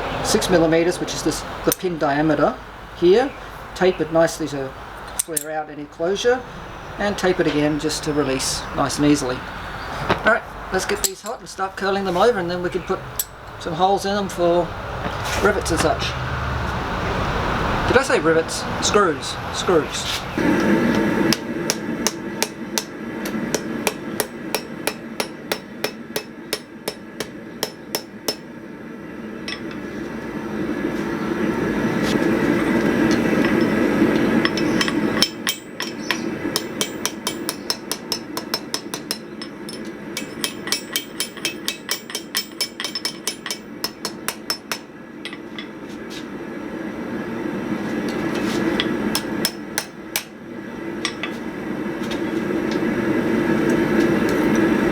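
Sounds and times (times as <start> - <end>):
low rushing noise: 11.5 - 21.7
hammer striking steel on anvil: 21.3 - 28.5, 34.4 - 45.7, 48.8 - 50.4, 51.0 - 51.4.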